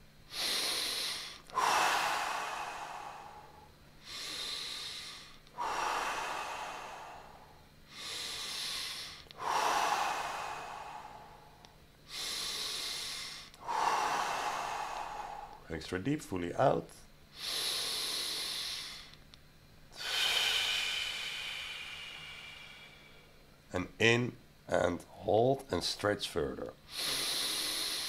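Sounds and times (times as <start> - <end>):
person breathing deeply: 0.3 - 15.7, 17.3 - 19.2, 19.9 - 23.4, 26.8 - 28.0.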